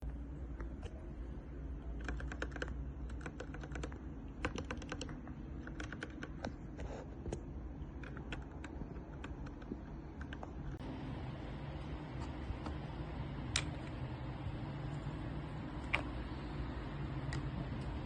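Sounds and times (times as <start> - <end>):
mechanical keyboard typing: 1.9 - 6.6, 7.9 - 10.8
low hum: 6.6 - 18.0.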